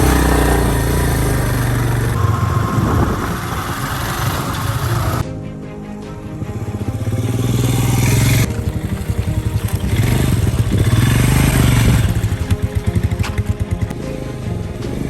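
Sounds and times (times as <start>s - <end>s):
motorcycle engine revving: 0.0s - 5.2s, 6.2s - 15.0s.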